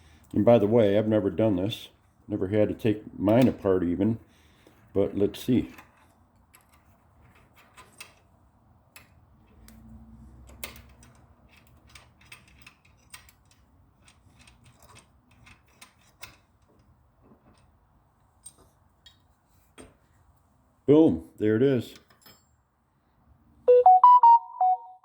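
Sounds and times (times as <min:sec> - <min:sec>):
small metal clicks and ticks: 0:10.4 - 0:17.8.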